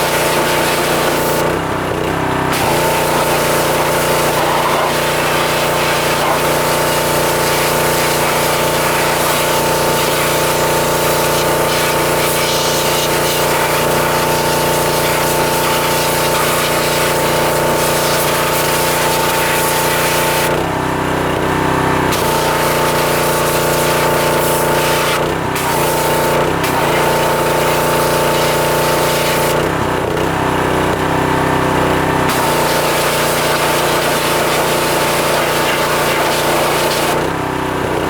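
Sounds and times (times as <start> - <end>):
water jet hissing: 0.0 - 1.5, 2.3 - 20.5, 22.1 - 29.6, 32.3 - 37.2
pressure washer hum: 0.0 - 38.0.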